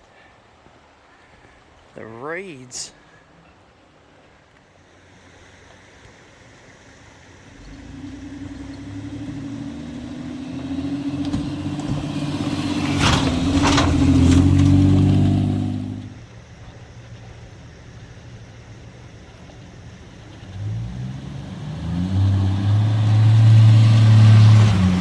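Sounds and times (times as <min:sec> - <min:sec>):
vehicle engine running: 0:07.2 - 0:25.0
short rushes of noise: 0:10.8 - 0:16.2.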